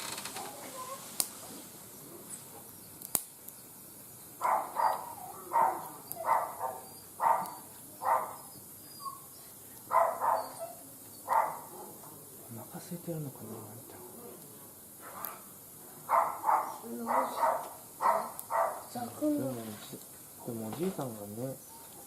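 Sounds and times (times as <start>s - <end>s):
wood fire crackling: 0.0s - 22.0s
dog barking: 4.4s - 8.5s, 9.1s - 12.3s, 15.0s - 19.1s.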